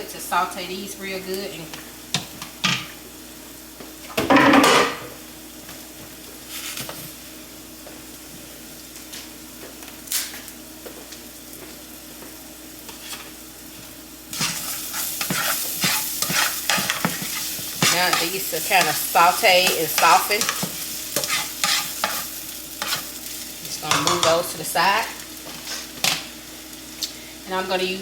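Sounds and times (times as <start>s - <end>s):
peppers sizzling in a skillet: 0.0s - 28.0s
spatula scraping a pan: 14.3s - 24.4s, 25.5s - 26.2s.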